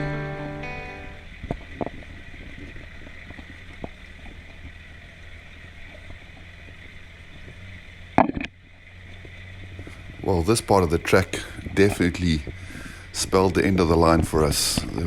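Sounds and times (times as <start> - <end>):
vehicle driving over rough track: 1.1 - 15.0
small knocks: 8.2 - 8.6.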